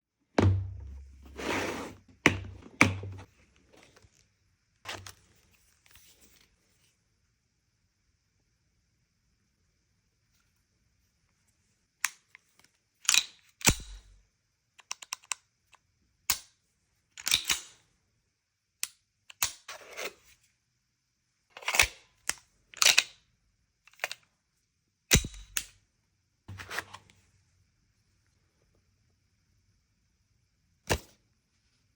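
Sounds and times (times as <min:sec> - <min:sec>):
short sliding sounds: 0:01.2 - 0:03.3
pistol clicks and clacks: 0:13.1 - 0:14.2, 0:25.1 - 0:25.8.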